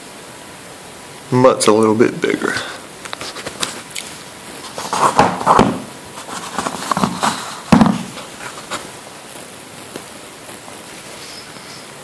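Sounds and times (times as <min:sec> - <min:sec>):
rustling: 0:03.0 - 0:12.0.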